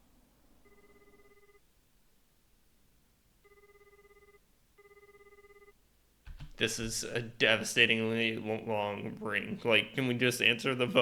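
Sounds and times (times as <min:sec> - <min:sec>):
faint telephone ringing: 0:00.6 - 0:01.7, 0:03.4 - 0:06.6.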